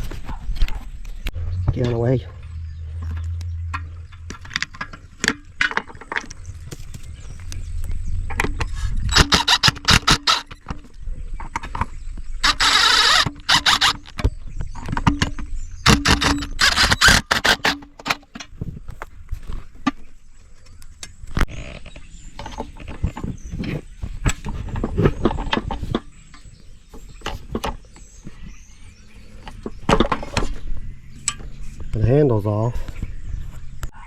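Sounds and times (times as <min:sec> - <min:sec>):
metal clanks and rattles: 0:00.0 - 0:07.6.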